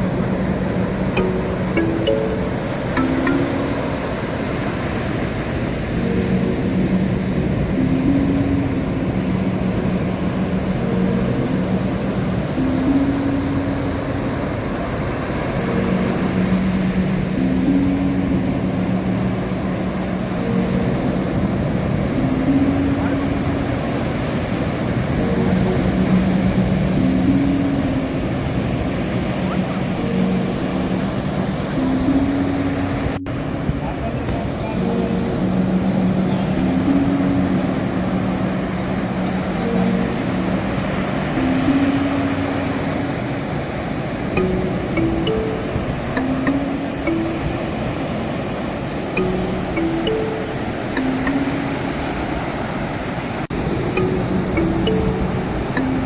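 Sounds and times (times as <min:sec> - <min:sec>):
low held tones: 0:00.0 - 0:14.7
ocean surf rushing: 0:00.0 - 0:56.0
soft music with long notes: 0:00.0 - 0:56.0.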